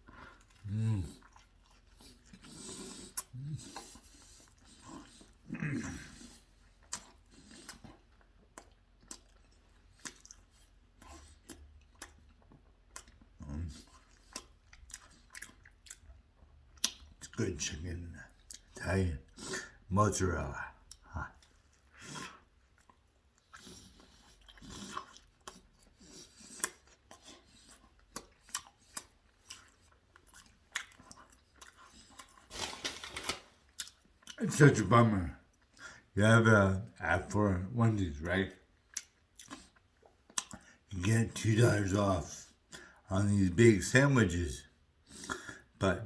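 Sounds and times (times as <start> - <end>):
person chewing: 0.0 - 17.3, 18.3 - 19.9, 20.6 - 34.4, 38.5 - 41.8, 45.0 - 45.8.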